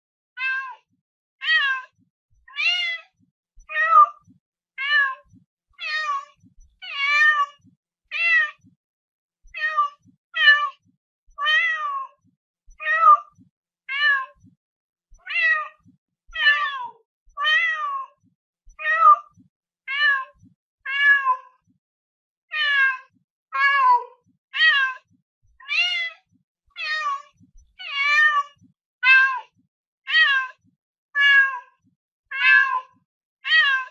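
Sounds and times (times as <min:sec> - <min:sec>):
cat meowing: 0:01.4 - 0:01.9, 0:04.8 - 0:08.6, 0:09.6 - 0:10.8, 0:11.4 - 0:12.2, 0:13.9 - 0:14.4, 0:19.9 - 0:21.4, 0:22.5 - 0:24.0, 0:24.6 - 0:25.0, 0:26.8 - 0:27.2, 0:27.8 - 0:29.4, 0:30.1 - 0:30.5, 0:31.2 - 0:31.6, 0:32.3 - 0:32.8, 0:33.4 - 0:33.9.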